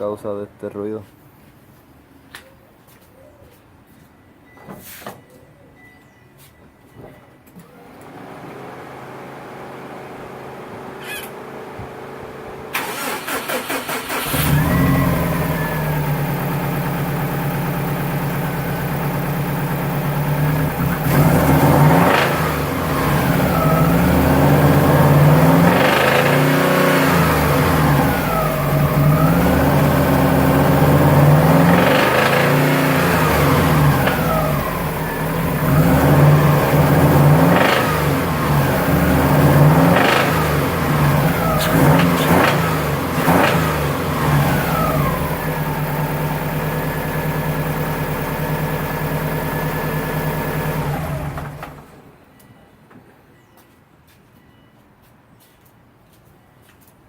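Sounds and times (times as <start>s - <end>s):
car engine idling and revving: 7.8s - 51.9s
starter cranking engine: 12.7s - 15.1s.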